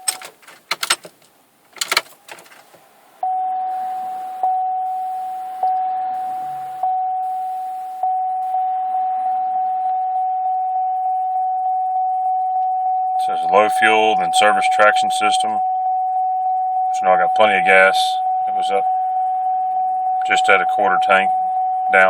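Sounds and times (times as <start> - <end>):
dashboard warning chime: 0.0 - 2.8
sharp clicks: 0.0 - 2.8.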